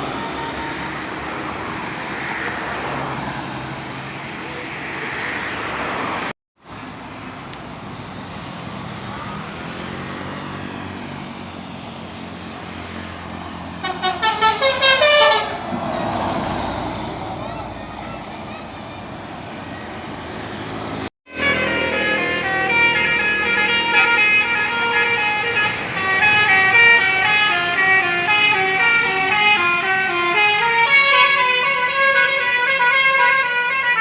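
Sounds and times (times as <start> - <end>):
bus multi-tone horn notes: 0.0 - 1.2, 13.8 - 15.7, 21.3 - 34.0
bus engines running: 0.0 - 34.0
road noise: 0.0 - 34.0.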